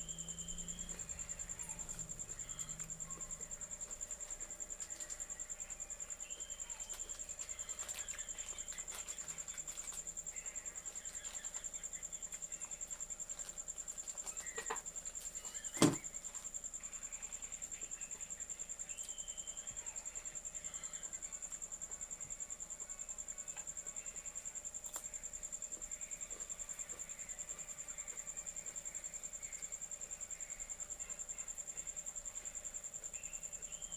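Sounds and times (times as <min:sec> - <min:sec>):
crickets trilling: 0:00.0 - 0:33.9.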